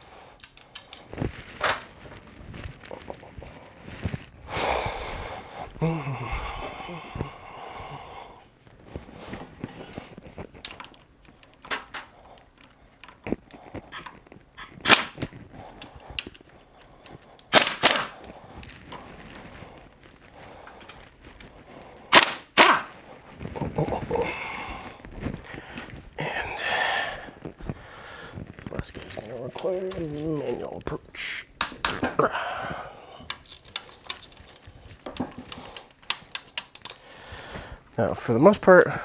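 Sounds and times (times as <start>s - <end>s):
impact tool bursts: 14.8s - 15.2s, 17.5s - 18.2s, 22.1s - 22.9s.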